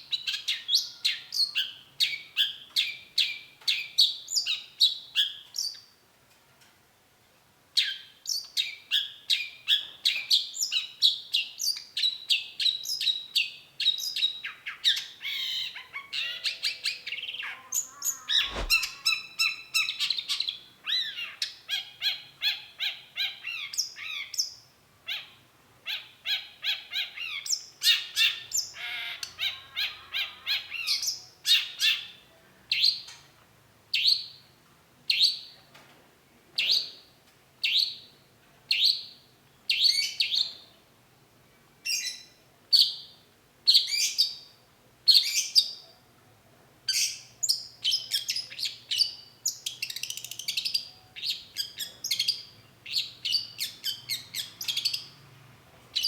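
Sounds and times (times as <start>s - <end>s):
harsh bird calls: 15.2s - 20.3s, 26.7s - 32.1s
bird singing chattering phrases: 15.6s - 19.6s.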